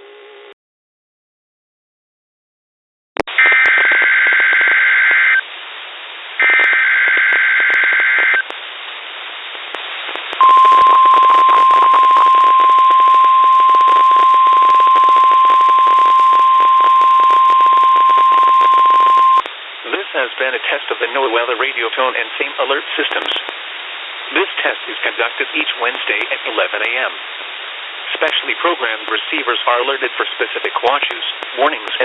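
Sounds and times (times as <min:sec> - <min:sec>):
radio static hiss: 0:03.3 - 0:32.0
steady warning alarm tone: 0:10.4 - 0:19.4
warbling digital data bursts: 0:10.4 - 0:19.4.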